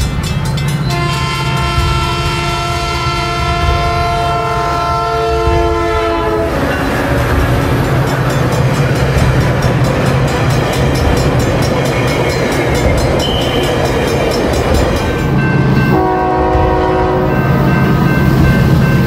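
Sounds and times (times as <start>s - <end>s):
train running over rails: 0.0s - 19.0s
locomotive air horn: 0.8s - 7.3s, 15.9s - 17.6s.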